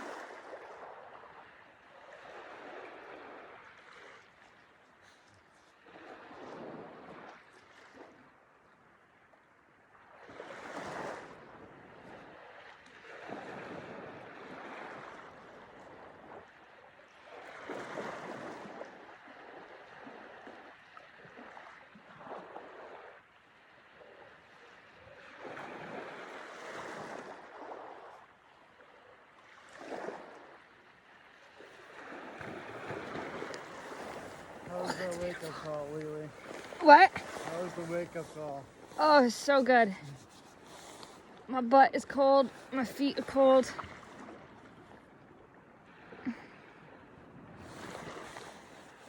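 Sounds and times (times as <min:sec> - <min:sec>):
small waves washing onto shore: 0:00.0 - 0:49.0.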